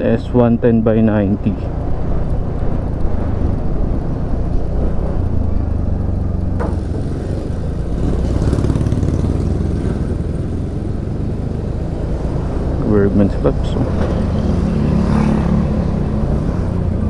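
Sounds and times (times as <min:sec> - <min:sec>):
road noise: 0:00.0 - 0:17.0
motor scooter running: 0:06.6 - 0:11.6.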